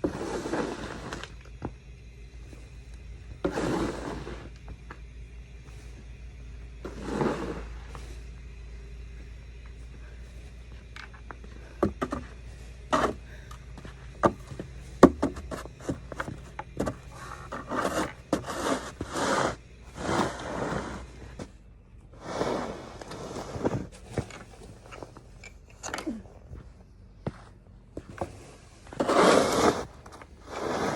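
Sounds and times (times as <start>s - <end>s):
snow shovel scraping: 0.0s - 1.4s, 2.5s - 4.6s, 6.7s - 8.5s, 11.4s - 21.5s, 22.2s - 25.2s, 28.0s - 30.9s
snow shovel knocking: 0.0s - 1.7s, 3.4s - 4.6s, 6.8s - 8.2s, 11.4s - 21.4s, 28.0s - 30.9s.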